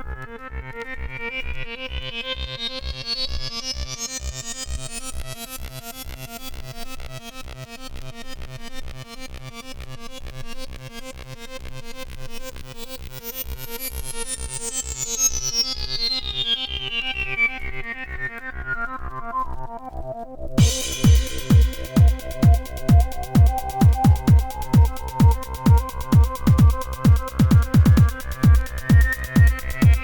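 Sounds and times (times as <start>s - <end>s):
high synth sweep: 20.6s - 30.0s
kick drum: 20.6s - 30.0s
synthesizer pattern: 20.6s - 30.0s.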